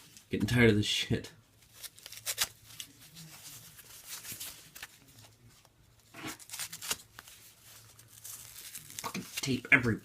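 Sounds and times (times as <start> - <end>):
tape being torn off: 1.8 - 2.8, 6.2 - 7.3
packaging rustling: 6.1 - 9.6.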